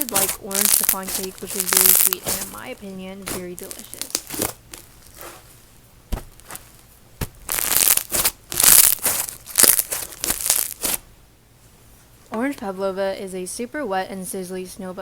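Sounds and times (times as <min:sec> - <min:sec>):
slime squished with crackly pops: 0:00.0 - 0:05.2, 0:06.1 - 0:11.0.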